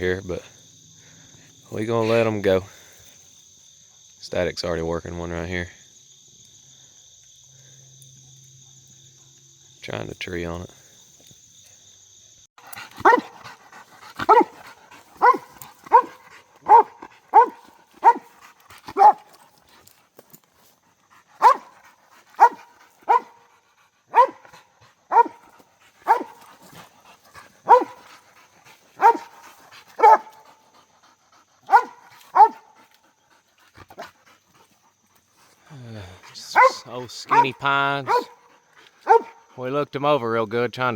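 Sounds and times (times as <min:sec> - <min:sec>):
dog barking: 0:12.8 - 0:13.5, 0:14.2 - 0:19.3, 0:21.4 - 0:23.5, 0:24.1 - 0:26.5, 0:27.6 - 0:28.2, 0:29.0 - 0:30.6, 0:31.7 - 0:32.8, 0:36.4 - 0:39.5.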